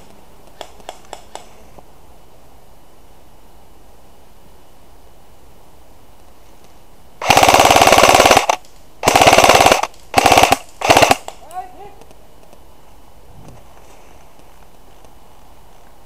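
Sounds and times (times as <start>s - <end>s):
airsoft gun bursts: 7.2s - 11.5s.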